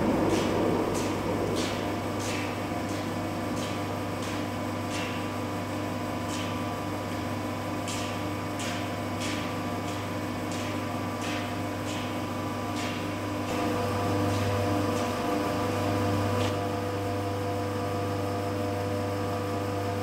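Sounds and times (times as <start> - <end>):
hydraulic press humming: 0.0 - 17.1.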